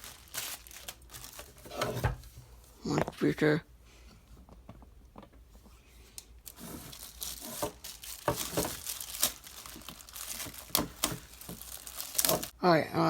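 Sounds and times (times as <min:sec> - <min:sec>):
packaging crinkling and rustling: 0:00.0 - 0:02.3, 0:06.4 - 0:12.6.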